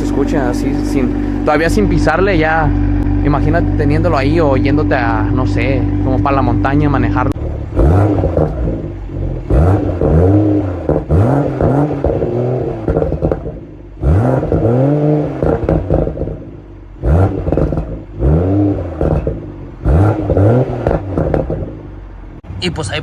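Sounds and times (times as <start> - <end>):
car engine revving: 0.0 - 23.0
exhaust pops and crackles: 7.3 - 23.0.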